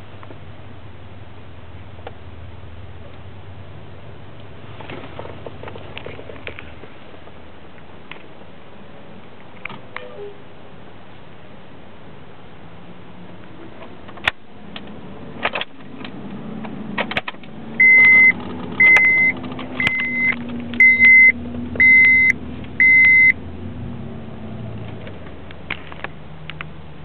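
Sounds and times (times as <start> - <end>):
low steady hum: 0.0 - 27.0
car warning chime beeping: 17.8 - 23.4.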